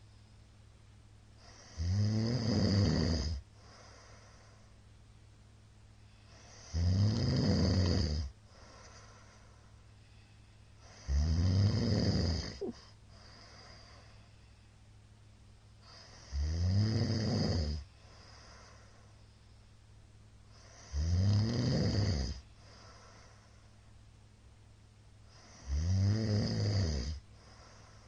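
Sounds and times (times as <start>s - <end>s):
quiet breathing: 0.0s - 2.0s, 2.8s - 5.2s, 5.8s - 24.5s, 25.1s - 28.0s
man snoring loudly: 1.4s - 3.4s, 6.4s - 8.3s, 10.8s - 12.8s, 16.1s - 17.8s, 20.6s - 22.4s, 25.3s - 27.2s.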